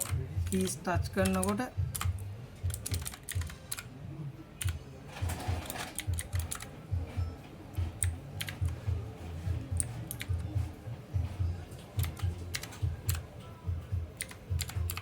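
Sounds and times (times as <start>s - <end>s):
mechanical keyboard clacking: 0.0s - 3.9s, 4.6s - 6.7s, 9.8s - 10.4s, 11.9s - 13.3s, 14.1s - 15.0s.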